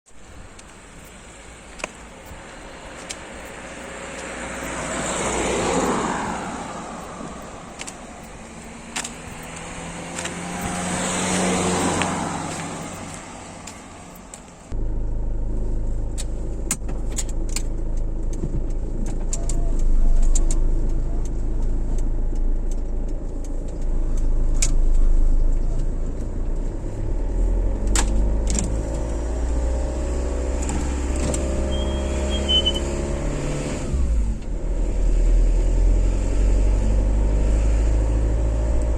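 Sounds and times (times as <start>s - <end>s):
vehicles swishing past: 0.1s - 14.8s, 18.4s - 38.9s
car engine and road noise inside cabin: 0.1s - 38.9s
light clicks: 7.0s - 10.8s.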